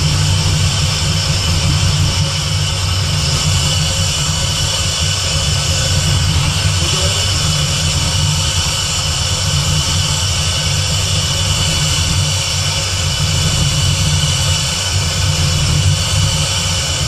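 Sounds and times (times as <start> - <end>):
car engine idling: 0.0 - 17.0.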